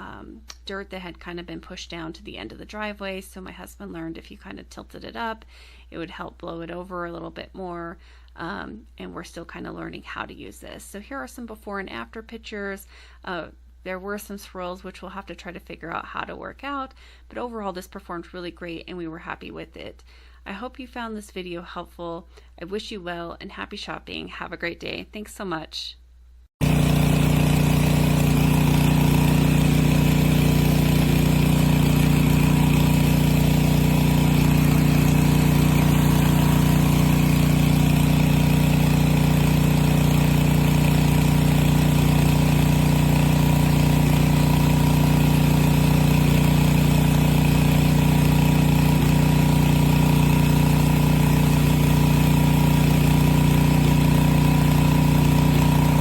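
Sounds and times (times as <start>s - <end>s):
pressure washer running: 26.6s - 56.0s.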